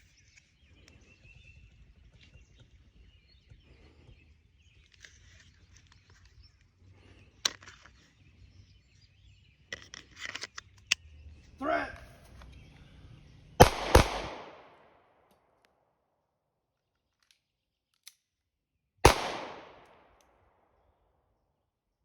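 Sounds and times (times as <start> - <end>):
pistol shots: 13.6 - 14.9, 19.0 - 20.2.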